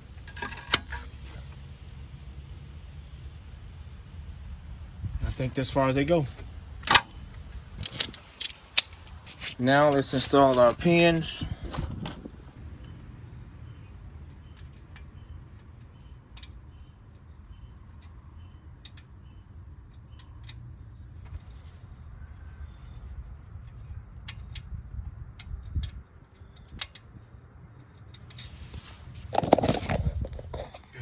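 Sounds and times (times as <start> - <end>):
light metallic clicks and taps: 14.2 - 18.2, 18.8 - 19.1, 19.9 - 20.7, 25.4 - 28.5.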